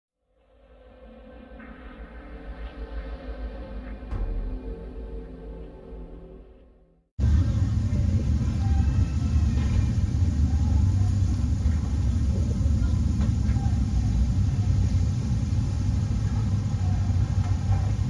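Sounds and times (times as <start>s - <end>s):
deep rumbling drone: 7.2s - 18.0s.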